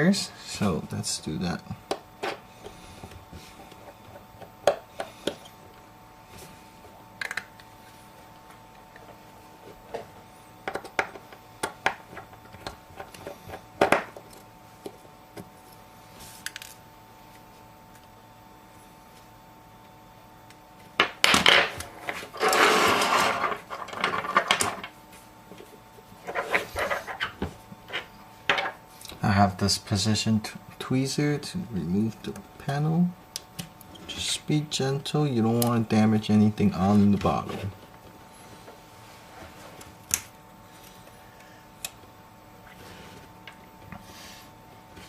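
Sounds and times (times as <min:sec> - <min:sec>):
hand tools scraping smartphone: 0:22.3 - 0:23.7.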